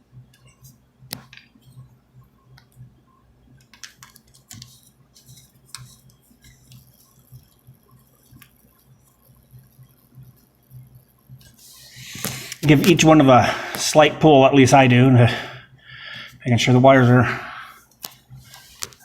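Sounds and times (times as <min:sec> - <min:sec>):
low steady hum: 0:00.0 - 0:19.0
wires clicking and scraping: 0:03.6 - 0:14.0, 0:17.8 - 0:19.0.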